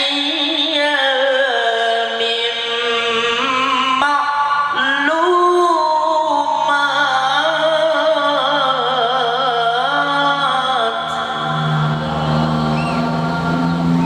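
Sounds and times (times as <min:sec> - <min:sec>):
man chanting melodically: 0:10.2 - 0:14.0.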